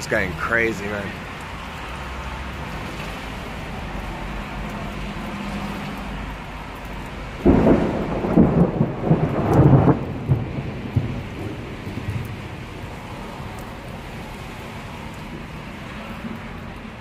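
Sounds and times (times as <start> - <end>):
steady rain: 0.0 - 17.0
close thunderclap rumbling: 7.4 - 13.6.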